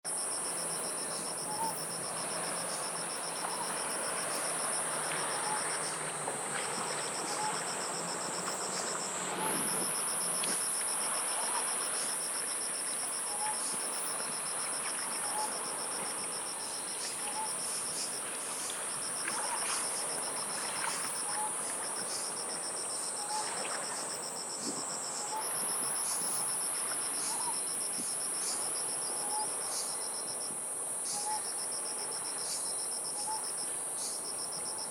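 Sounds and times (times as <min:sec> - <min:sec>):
cricket-like trill: 0:00.1 - 0:06.0
sea waves on shore: 0:00.2 - 0:30.8.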